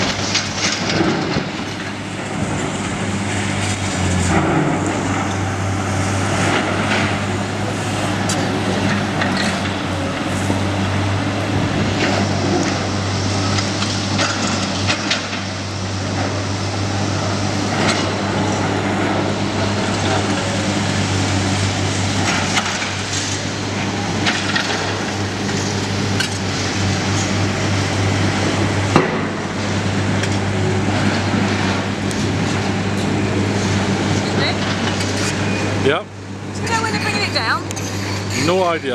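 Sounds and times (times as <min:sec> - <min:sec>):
heavy machine engine droning: 0:00.0 - 0:38.9.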